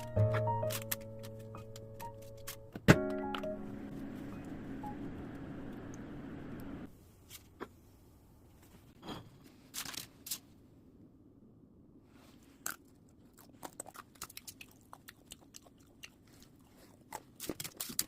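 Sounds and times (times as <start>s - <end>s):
person chewing crunchy snack: 12.6s - 18.0s.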